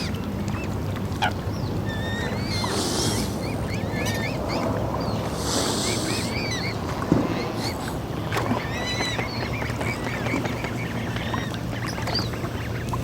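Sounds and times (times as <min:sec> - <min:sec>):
birds chirping: 0:00.0 - 0:13.0
water rushing: 0:00.0 - 0:13.0
splashing hiss: 0:02.4 - 0:04.3, 0:05.1 - 0:06.6.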